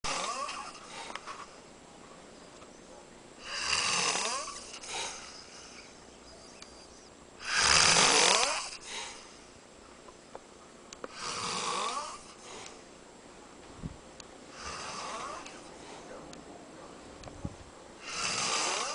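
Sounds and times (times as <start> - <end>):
man snoring: 0.1 - 1.0, 3.4 - 5.6, 7.4 - 8.9, 11.1 - 12.7, 14.5 - 15.7, 18.0 - 18.9
soft breath out: 15.1 - 16.2.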